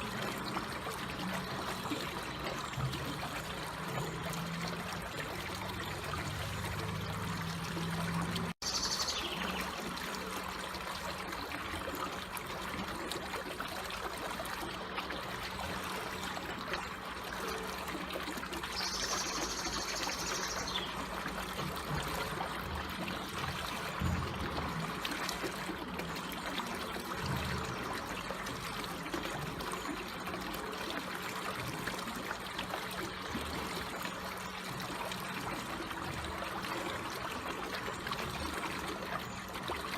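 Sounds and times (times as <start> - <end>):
water trickling and flowing: 0.0 - 39.9.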